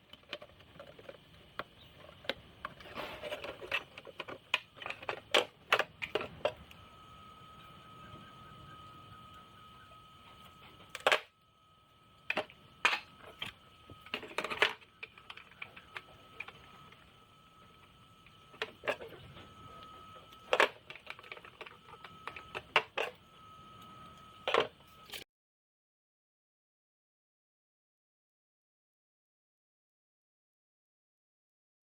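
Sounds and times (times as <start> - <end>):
faint high-pitched tone: 2.7 - 25.2.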